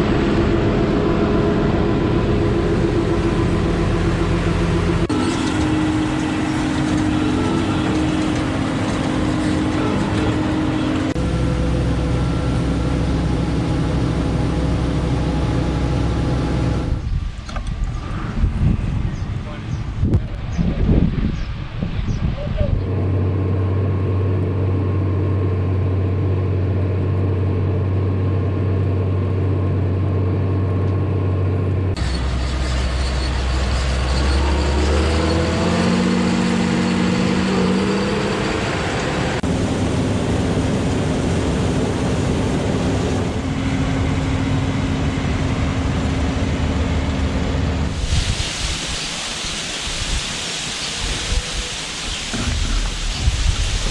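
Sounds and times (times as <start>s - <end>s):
harvester engine droning: 0.0s - 19.0s, 22.7s - 48.7s
steady hiss: 47.9s - 53.9s.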